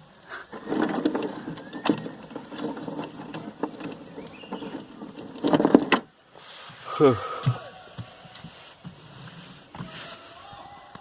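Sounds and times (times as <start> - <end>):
wooden boat knocking and scraping: 0.5 - 6.1
boat clatter: 0.5 - 6.2.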